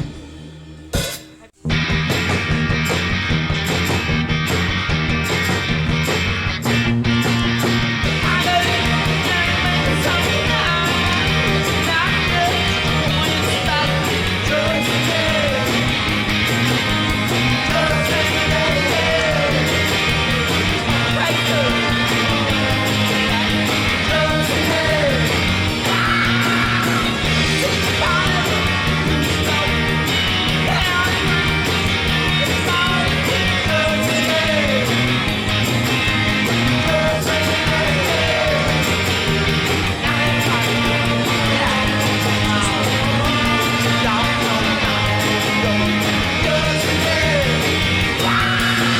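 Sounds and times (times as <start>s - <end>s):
rock music with electric guitar: 0.0s - 48.9s
person singing: 8.2s - 15.9s, 17.5s - 35.1s, 36.7s - 48.9s.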